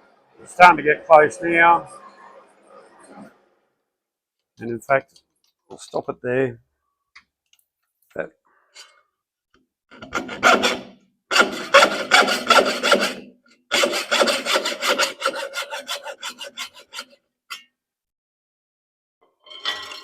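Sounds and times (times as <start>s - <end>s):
hacksaw cutting metal bar: 9.9s - 17.7s.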